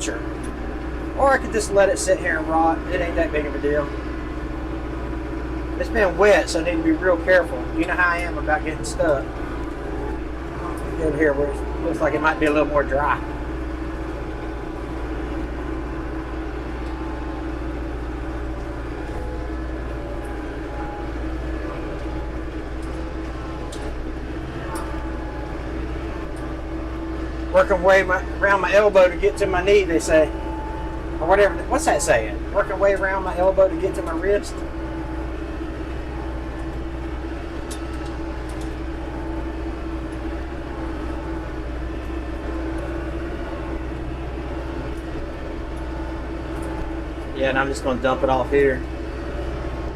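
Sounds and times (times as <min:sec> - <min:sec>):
diesel tractor engine running: 0:00.0 - 0:49.9.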